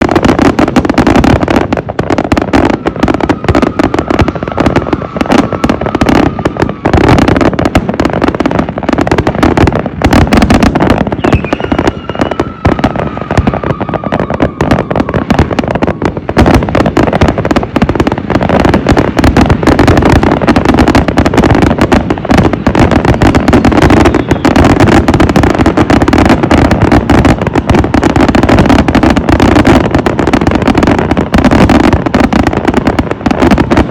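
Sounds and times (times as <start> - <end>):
fireworks bursting and crackling: 0.0 - 33.9
faint falling whistle: 11.2 - 13.0.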